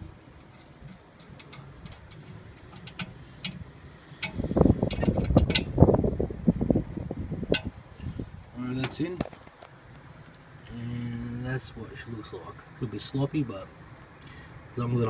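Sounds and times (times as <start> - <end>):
metal clicks of valve core screwing: 0.4 - 3.6, 4.2 - 5.7
rapid clicking and rattling: 0.4 - 3.6.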